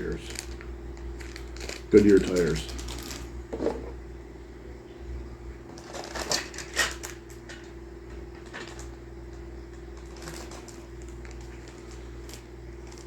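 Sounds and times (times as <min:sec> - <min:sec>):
plastic bags rustling: 0:00.0 - 0:03.4, 0:05.7 - 0:07.6, 0:08.3 - 0:13.0.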